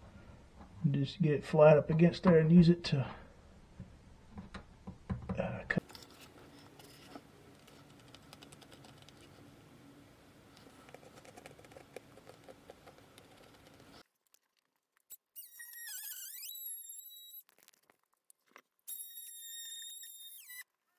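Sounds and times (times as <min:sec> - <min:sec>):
high squealing tone: 0:15.3 - 0:17.5, 0:18.9 - 0:20.6.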